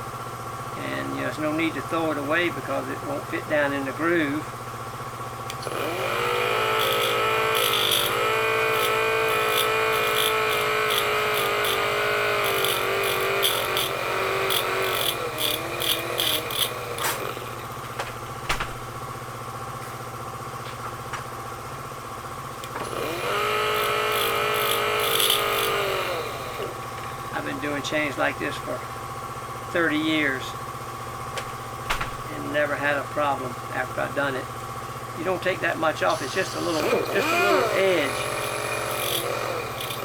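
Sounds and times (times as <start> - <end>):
air die grinder whining: 5.5 - 18.4, 22.5 - 28.8, 35.9 - 40.0
grinder scraping metal: 5.6 - 17.8, 22.7 - 27.1, 36.1 - 40.0.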